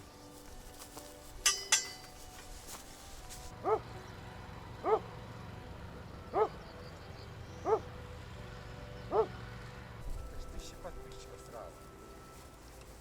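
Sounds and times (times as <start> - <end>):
dog barking: 3.6 - 3.9, 4.8 - 5.1, 6.3 - 6.6, 7.6 - 7.9, 9.1 - 9.3.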